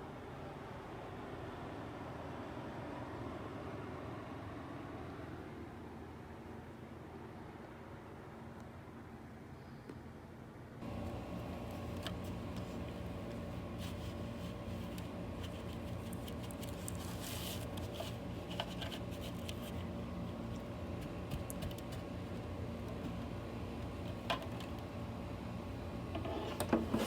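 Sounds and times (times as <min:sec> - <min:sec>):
vacuum cleaner motor hum: 0:10.8 - 0:27.0.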